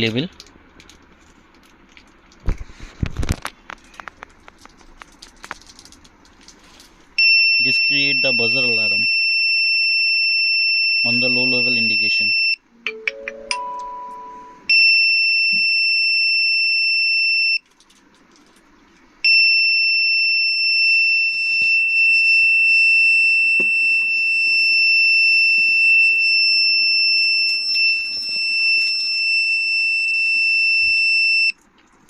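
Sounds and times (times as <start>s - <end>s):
high-pitched buzzer alarm: 7.2s - 12.6s, 14.3s - 17.6s, 19.3s - 31.6s.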